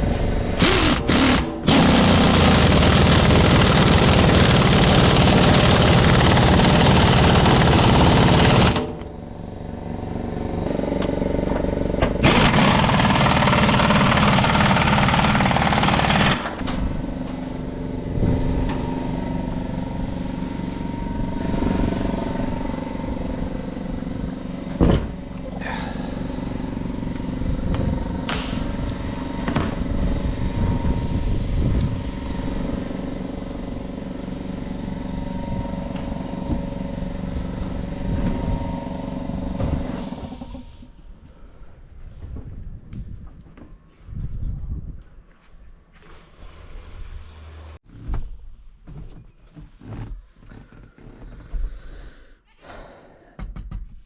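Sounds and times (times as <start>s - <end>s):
truck engine running: 1.2s - 18.1s.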